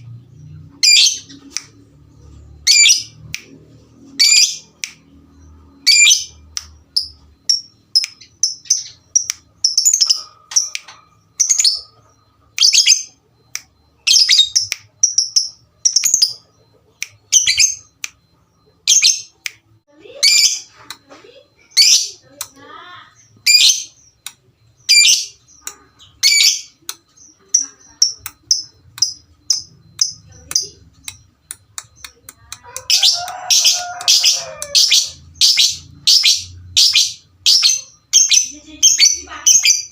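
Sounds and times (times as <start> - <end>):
lovebirds chirping shrilly: 32.8 - 39.9.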